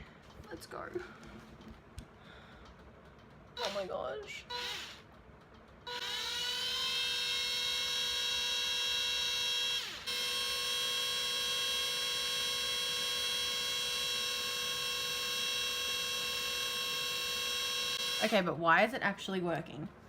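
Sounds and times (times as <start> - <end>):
cordless drill motor whining: 3.6 - 5.1, 5.8 - 18.5.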